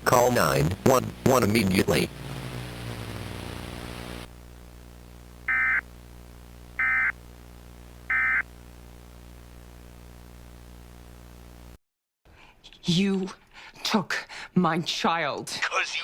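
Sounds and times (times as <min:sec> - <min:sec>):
faint steady hum and hiss: 0:00.0 - 0:11.8.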